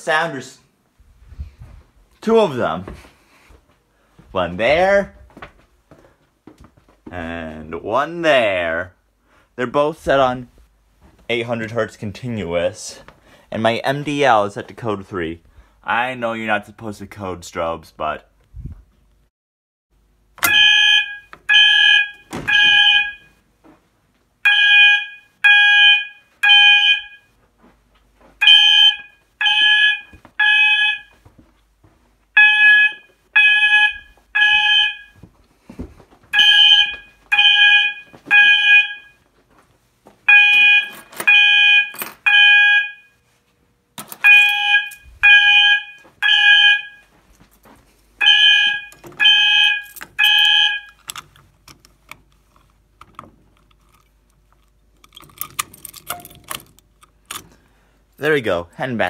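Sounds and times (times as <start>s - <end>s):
fire alarm horns: 20.4s - 23.4s, 24.4s - 27.4s, 28.4s - 31.2s, 32.3s - 35.2s, 36.3s - 39.2s, 40.2s - 43.2s, 44.1s - 47.2s, 48.2s - 51.2s.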